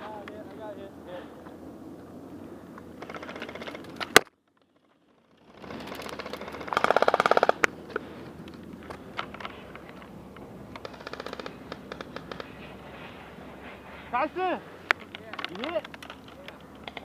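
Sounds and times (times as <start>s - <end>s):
airsoft guns firing: 5.6s - 7.8s, 10.7s - 12.7s.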